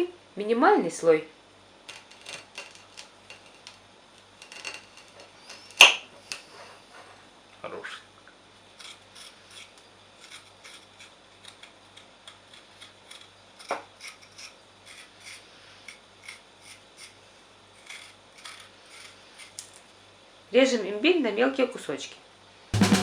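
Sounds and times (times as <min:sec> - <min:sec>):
ginger skin being scraped: 0:08.8 - 0:15.4, 0:17.8 - 0:19.6
sharp knock: 0:22.8 - 0:23.0.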